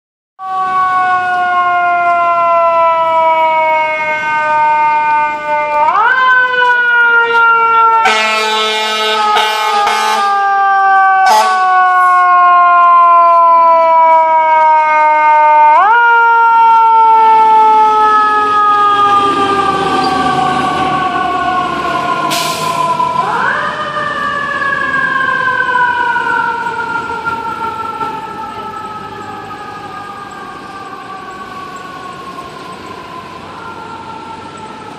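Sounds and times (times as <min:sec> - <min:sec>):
fire engine siren wailing: 0:00.4 - 0:34.9
air horn blasts: 0:08.0 - 0:10.4, 0:11.2 - 0:12.2.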